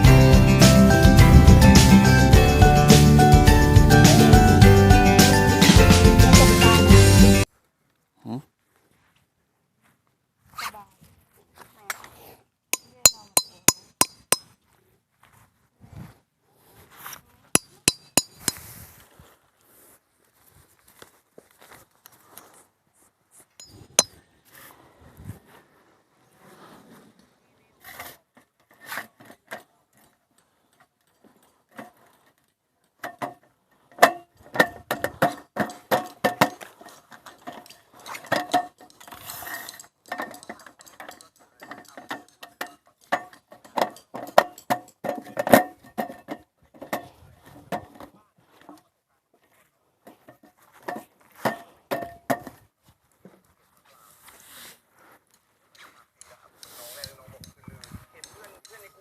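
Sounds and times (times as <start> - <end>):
utensils clinking against dishes: 12.8 - 14.4, 17.6 - 18.6, 37.6 - 43.2.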